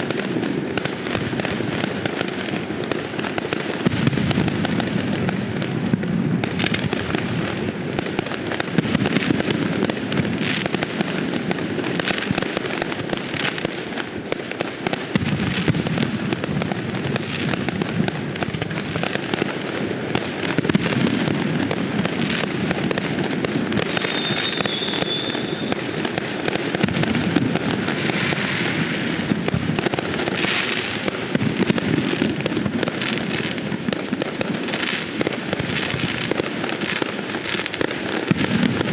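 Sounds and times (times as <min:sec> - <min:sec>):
fireworks crackles and pops: 0:00.0 - 0:38.9
high whistle: 0:24.0 - 0:25.7.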